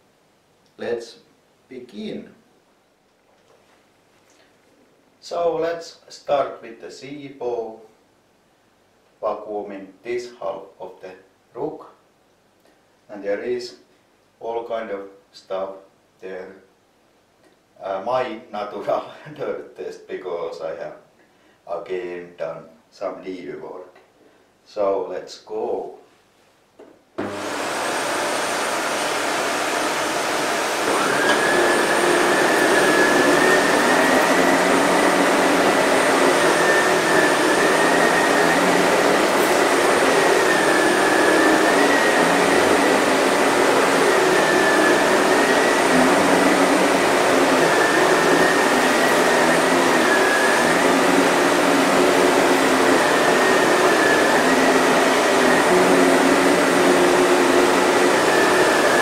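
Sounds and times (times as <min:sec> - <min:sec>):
vacuum cleaner running: 0:27.2 - 0:59.0.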